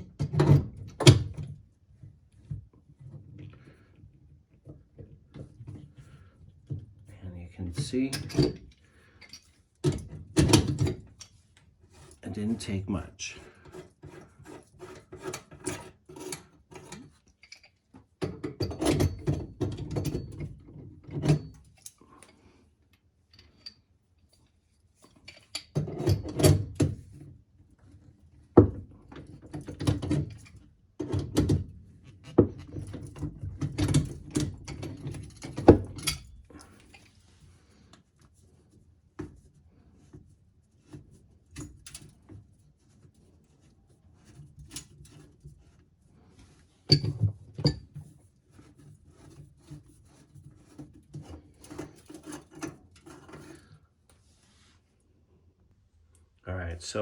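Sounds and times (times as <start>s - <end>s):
tools knocking and scraping: 0.0s - 3.6s, 7.7s - 22.4s, 25.0s - 37.2s, 46.5s - 53.8s.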